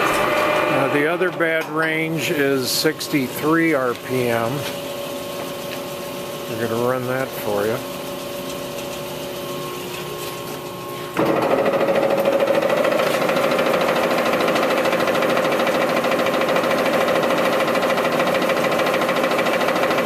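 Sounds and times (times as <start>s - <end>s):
lathe running with steady tones: 0.0s - 20.0s
loud pulsing gear noise: 11.2s - 20.0s.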